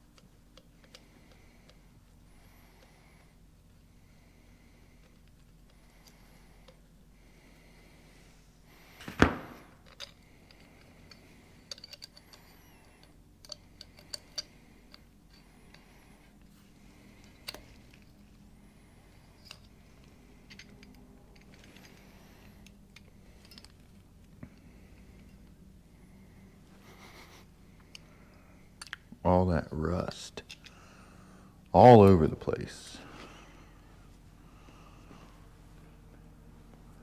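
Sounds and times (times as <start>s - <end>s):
loud metallic clunk: 9.0s - 9.7s
light metal clicks and clinks: 9.9s - 15.9s.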